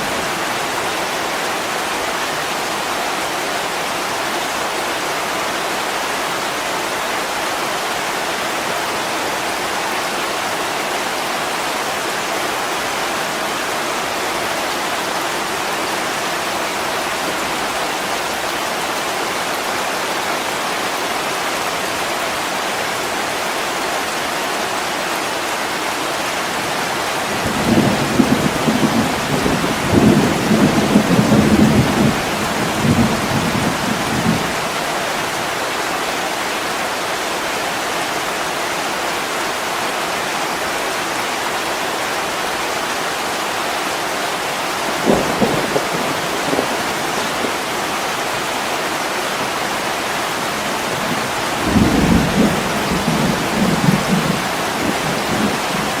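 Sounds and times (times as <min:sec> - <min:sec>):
heavy rain falling: 0:00.0 - 0:56.0
thunder rumbling: 0:44.9 - 0:47.8, 0:50.3 - 0:56.0.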